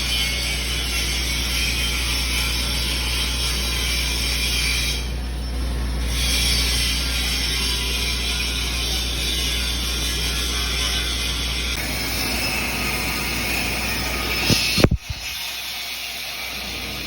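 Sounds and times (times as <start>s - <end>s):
welding arc crackling: 6.1s - 17.0s.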